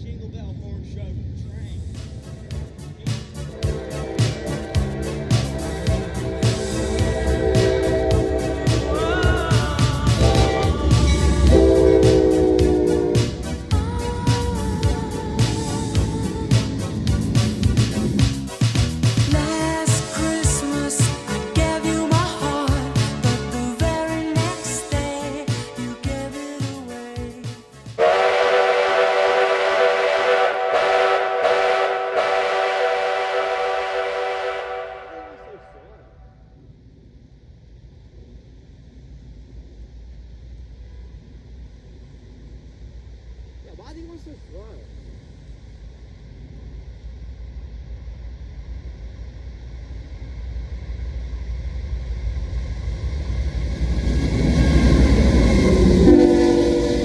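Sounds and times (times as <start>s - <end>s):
diesel freight train rumbling: 0.0s - 36.4s, 40.8s - 57.0s
background music: 2.0s - 28.8s
locomotive air horn: 2.2s - 18.6s, 27.6s - 36.2s, 54.7s - 57.0s.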